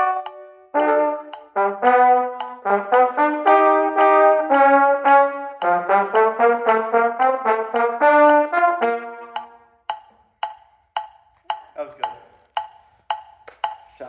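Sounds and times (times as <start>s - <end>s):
brass marching band music: 0.0s - 9.8s.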